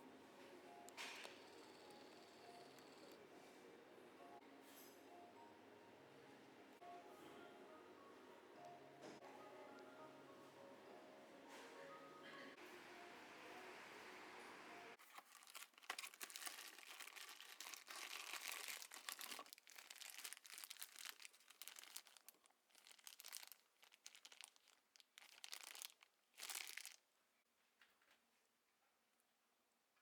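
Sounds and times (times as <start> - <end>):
faint crinkling and crackling: 15.0 - 29.0.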